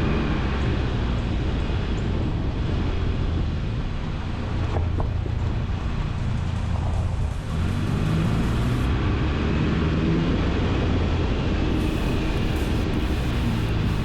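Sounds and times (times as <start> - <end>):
tyre and road rumble: 0.0 - 14.0
wind on microphone: 9.8 - 14.0.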